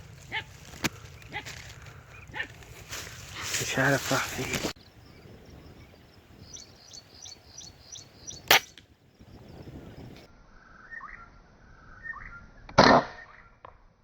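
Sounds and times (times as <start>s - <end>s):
small bird chirping: 4.7s - 12.5s
air rifle shot: 8.4s - 8.8s.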